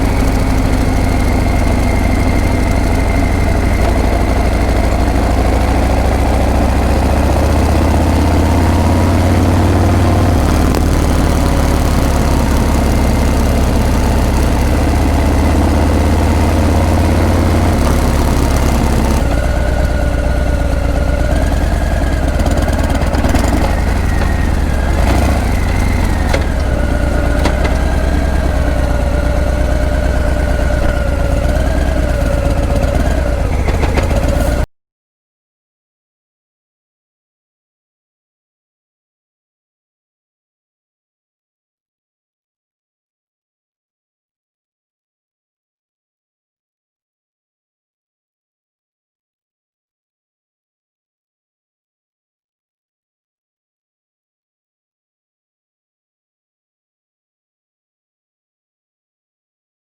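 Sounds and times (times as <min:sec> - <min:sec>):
motorcycle engine deep exhaust note: 0:00.0 - 0:34.6.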